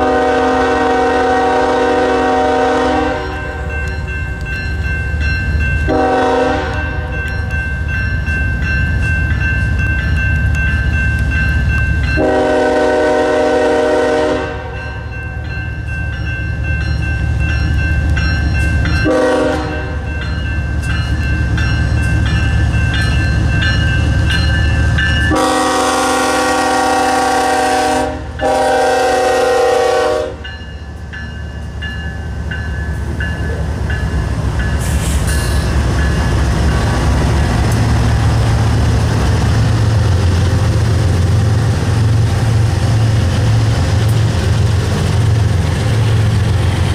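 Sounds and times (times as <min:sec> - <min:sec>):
locomotive horn blasts: 0:00.0 - 0:03.6, 0:05.9 - 0:07.1, 0:12.2 - 0:14.8, 0:19.0 - 0:20.0, 0:25.3 - 0:30.5
train engine rumble: 0:00.0 - 0:46.9.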